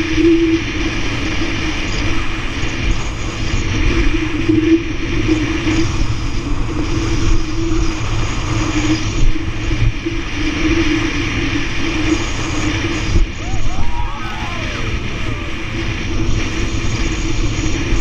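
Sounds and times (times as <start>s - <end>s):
speedboat engine droning: 11.1s - 18.0s.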